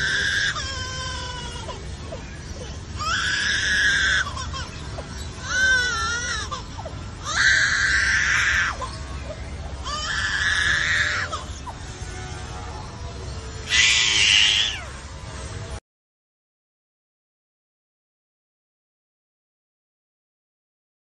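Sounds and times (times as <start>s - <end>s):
bird mimicking baby crying: 0.0s - 12.0s, 13.6s - 15.0s.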